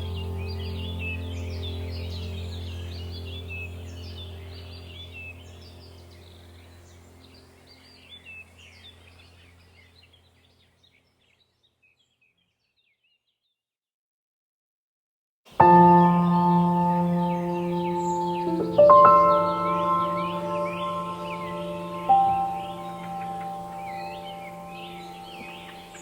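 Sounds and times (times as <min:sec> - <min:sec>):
low musical drone: 0:00.0 - 0:09.8, 0:15.6 - 0:26.0
small birds chirping: 0:00.0 - 0:13.6, 0:15.5 - 0:26.0.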